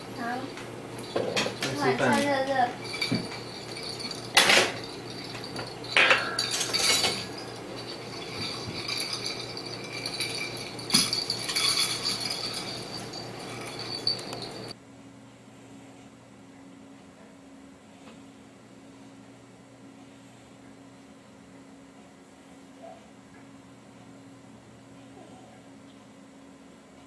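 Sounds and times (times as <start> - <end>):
dishes and cutlery clinking: 1.0 - 14.7.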